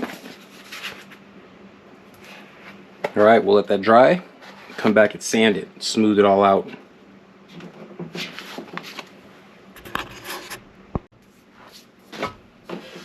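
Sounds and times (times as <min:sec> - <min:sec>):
tools scraping and rubbing: 0:09.8 - 0:10.6.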